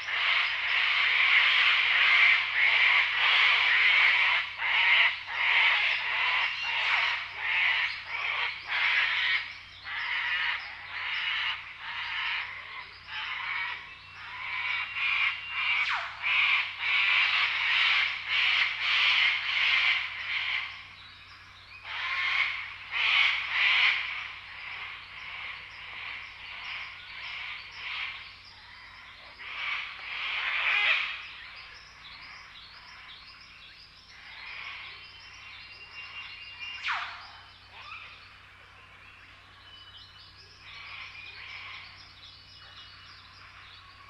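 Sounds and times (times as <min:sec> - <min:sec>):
chorus of raspy animal calls: 0:21.8 - 0:31.6.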